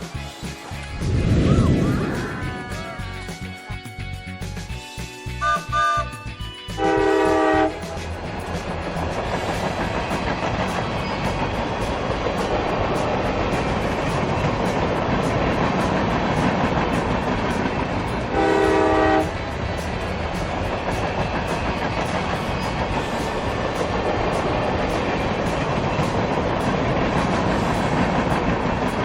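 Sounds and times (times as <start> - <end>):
steady rumbling noise: 0.0 - 4.7, 7.6 - 29.0
horn-like blast: 5.4 - 6.1, 6.8 - 7.9, 18.3 - 19.4.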